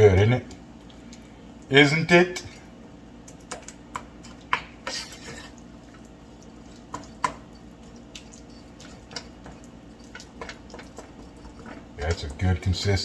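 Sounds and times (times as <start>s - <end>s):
beans popping wetly in a pan: 2.5s - 5.0s, 5.6s - 12.6s.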